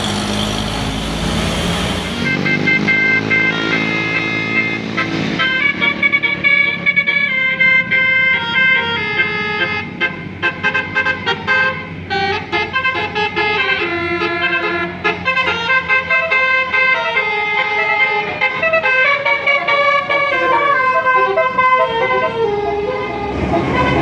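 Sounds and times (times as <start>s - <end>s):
bus engine rumbling: 0.0s - 24.0s
musical air horn playing melody: 1.2s - 24.0s.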